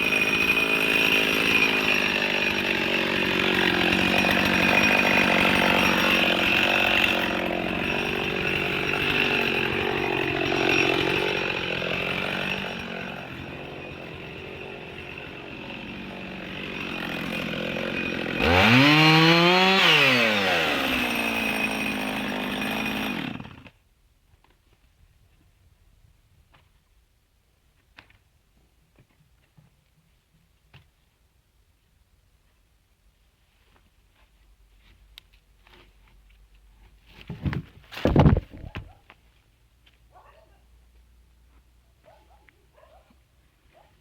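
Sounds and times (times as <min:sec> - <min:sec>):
chainsaw revving: 0:00.0 - 0:23.7
chainsaw running under load: 0:00.0 - 0:23.8.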